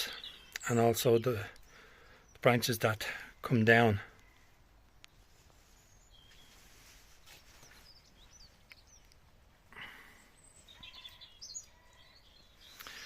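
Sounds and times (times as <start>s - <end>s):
faint bird chirps: 0.0s - 13.0s
soft rustle: 4.2s - 9.6s.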